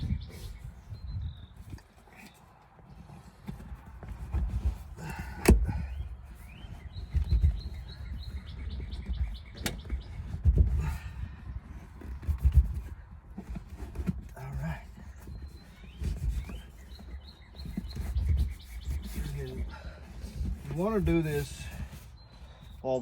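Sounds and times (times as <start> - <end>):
leather rubbing and handling: 0.0 - 22.7
small bird chirping: 6.4 - 10.7, 15.1 - 19.8.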